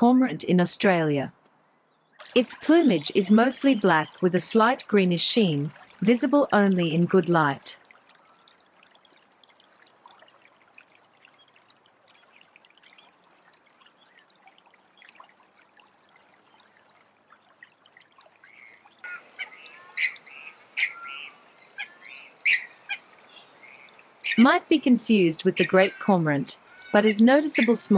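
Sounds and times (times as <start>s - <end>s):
water trickling and dripping: 2.0s - 27.9s
bird calling loudly: 18.5s - 24.6s.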